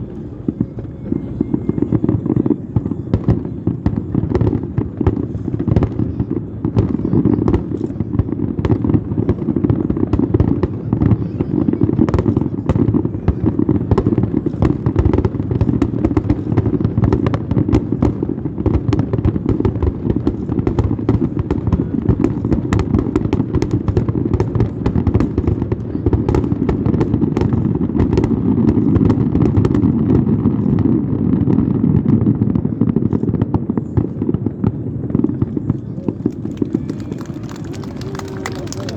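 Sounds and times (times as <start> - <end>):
fireworks bursts and crackles: 0.0 - 38.9.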